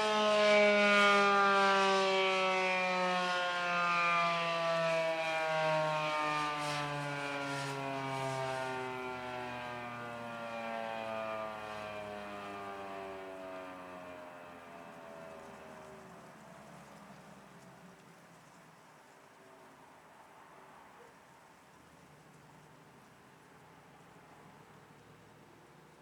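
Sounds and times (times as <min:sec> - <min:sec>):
tornado siren winding down: 0:00.0 - 0:15.9.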